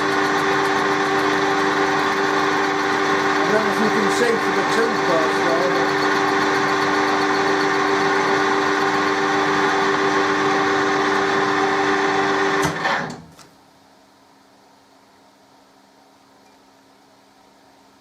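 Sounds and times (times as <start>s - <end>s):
lathe machine hum: 0.0s - 13.1s.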